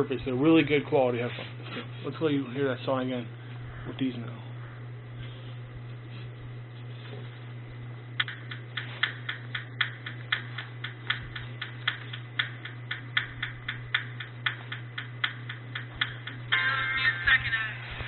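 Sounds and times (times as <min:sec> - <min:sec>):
low hum: 0:00.0 - 0:18.0
sharp ticking clicks: 0:08.2 - 0:16.5.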